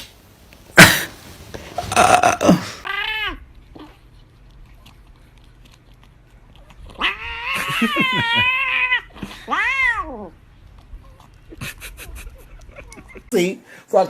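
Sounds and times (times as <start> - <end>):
cat yowling: 6.9 - 10.4.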